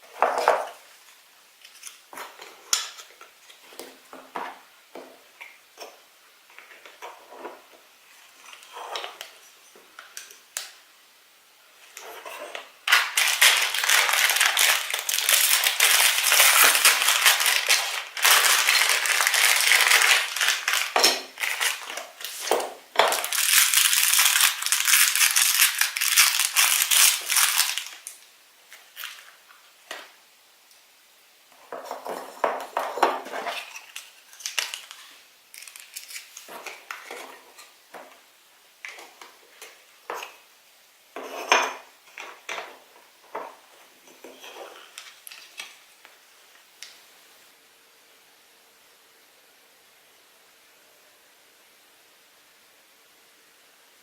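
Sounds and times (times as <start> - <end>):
plastic packaging clicks and rustles: 11.8 - 30.2, 31.7 - 38.2, 41.8 - 46.2
plastic wrapper crinkling: 11.9 - 29.4, 33.2 - 38.2, 44.4 - 45.8.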